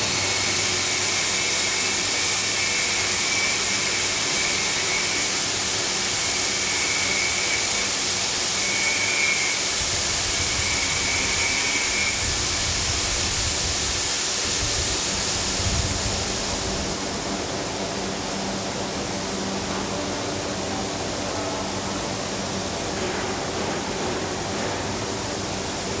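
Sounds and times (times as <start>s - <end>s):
steam locomotive hissing: 0.0s - 19.4s.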